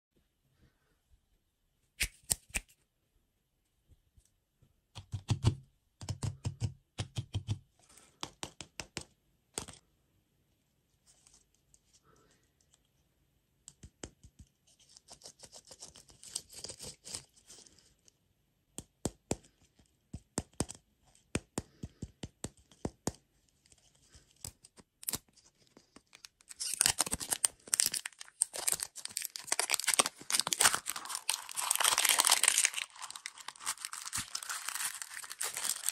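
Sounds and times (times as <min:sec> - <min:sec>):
sweets packaging crinkling: 0:25.0 - 0:35.9.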